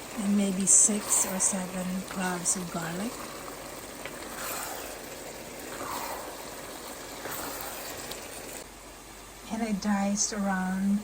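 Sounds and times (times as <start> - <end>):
meat sizzling in a pan: 0.0 - 8.7.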